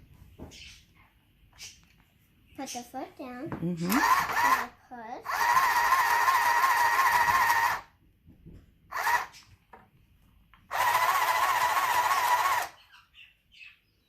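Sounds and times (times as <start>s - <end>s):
sewing machine motor whine: 3.9s - 7.9s, 8.9s - 9.4s, 10.7s - 12.8s.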